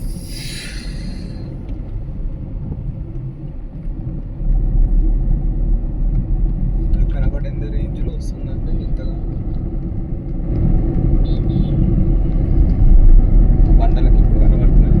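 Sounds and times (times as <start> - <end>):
brief hiss sweeping past: 0.0 - 1.5
moving car rumble: 0.0 - 15.0.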